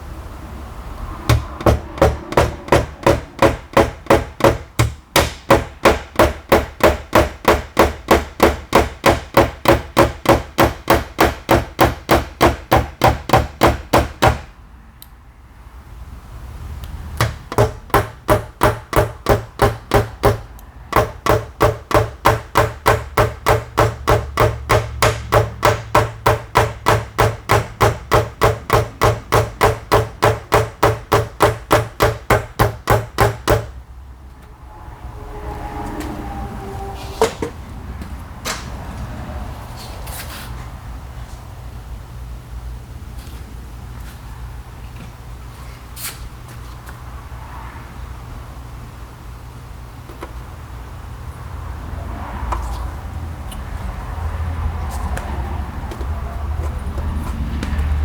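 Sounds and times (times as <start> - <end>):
fast hammer taps on metal: 1.3 - 14.5, 17.2 - 33.7.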